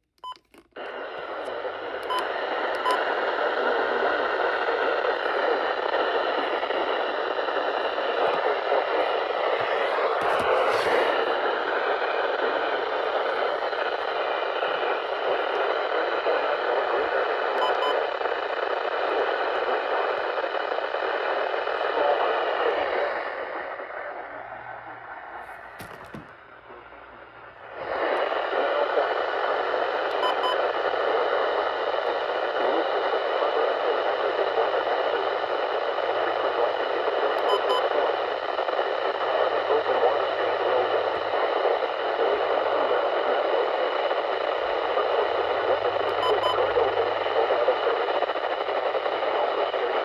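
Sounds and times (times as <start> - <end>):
radio static hiss: 0.8 - 50.0.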